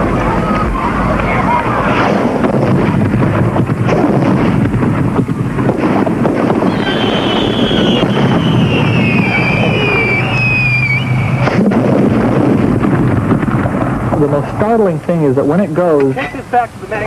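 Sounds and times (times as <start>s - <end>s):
fireworks noise: 0.0s - 16.0s
firework bang: 1.9s - 14.1s
firework whistle falling in pitch: 6.6s - 11.5s.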